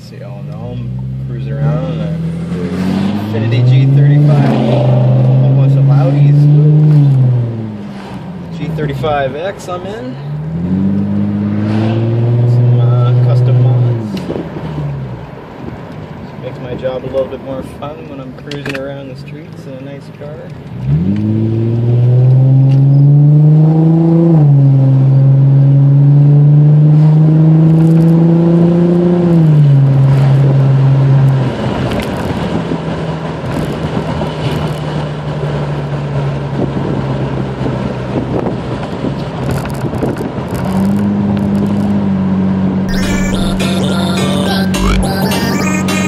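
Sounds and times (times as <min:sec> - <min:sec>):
road noise: 0:00.0 - 0:46.0
car engine accelerating: 0:00.4 - 0:09.3, 0:10.2 - 0:15.6, 0:20.7 - 0:39.7.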